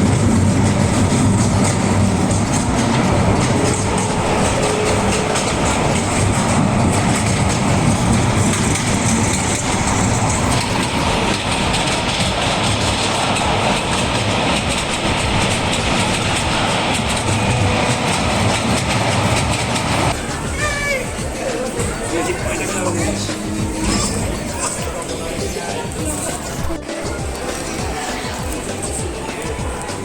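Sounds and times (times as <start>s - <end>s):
train wheels on track: 0.0s - 30.0s.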